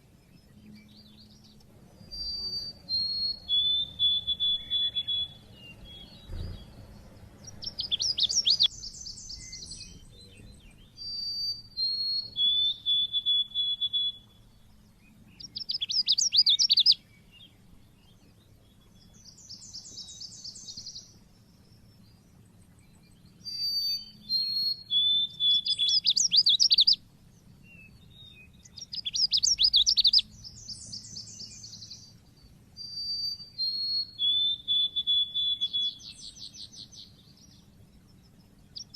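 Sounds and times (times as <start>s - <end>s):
faint low hum: 0.0s - 38.9s
bird whistling and trilling: 2.0s - 6.8s, 7.4s - 10.0s, 10.6s - 14.4s, 15.4s - 17.0s, 23.4s - 27.0s, 27.7s - 32.1s, 32.8s - 37.2s.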